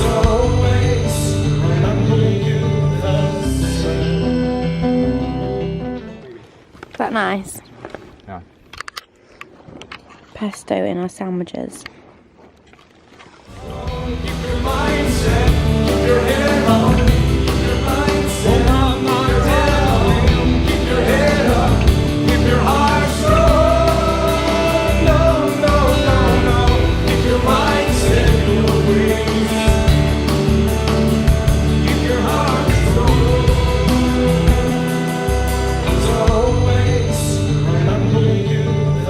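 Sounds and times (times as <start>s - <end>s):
rock song with sung vocal: 0.0s - 5.4s, 13.5s - 39.0s
steady bass: 0.0s - 6.0s, 13.5s - 39.0s.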